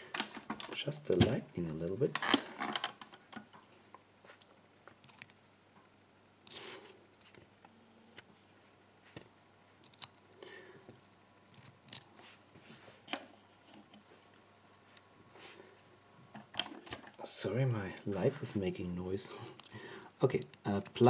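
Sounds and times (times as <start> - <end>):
lock pick clicks and scrapes: 5.0 - 5.4, 6.4 - 6.7, 9.8 - 12.2, 19.4 - 21.0.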